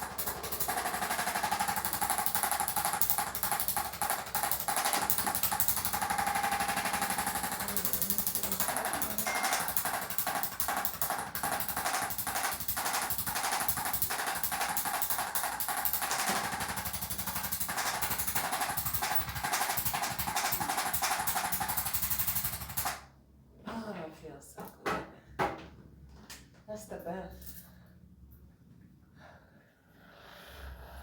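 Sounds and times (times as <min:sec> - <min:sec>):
massage gun hammering buzz: 0:00.0 - 0:23.0.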